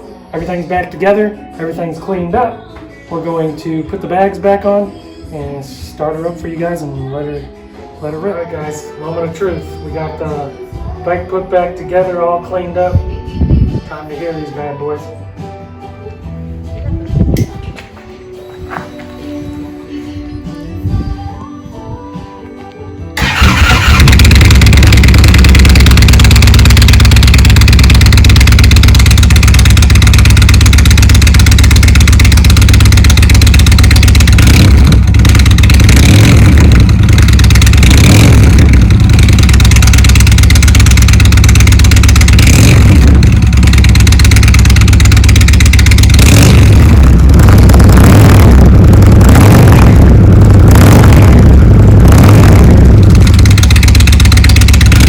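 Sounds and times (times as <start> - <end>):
engine throttle revs: 23.2 - 55.0
motorcycle engine running loud: 23.2 - 55.0
motorcycle engine starting: 23.2 - 55.0.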